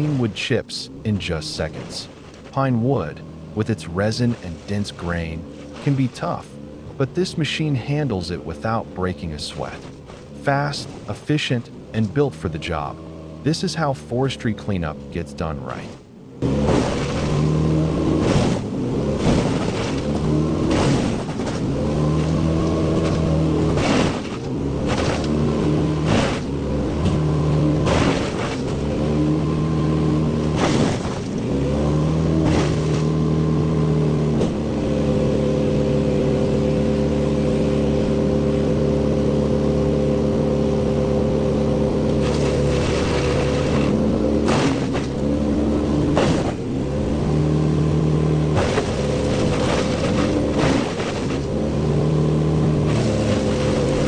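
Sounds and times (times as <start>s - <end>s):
wood chipper engine: 0.0s - 54.0s
wood cracking: 16.4s - 29.8s, 30.4s - 33.3s, 42.0s - 45.3s, 48.5s - 51.5s.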